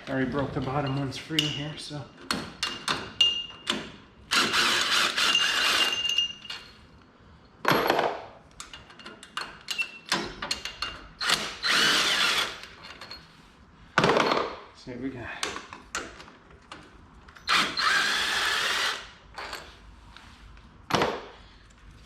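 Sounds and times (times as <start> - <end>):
cordless power driver spinning bolts: 17.4 - 19.1.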